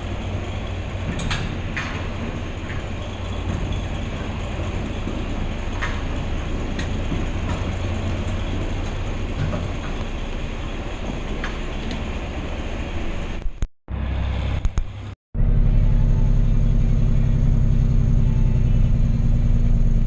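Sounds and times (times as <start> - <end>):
farm vehicle engine running: 0.0 - 20.0.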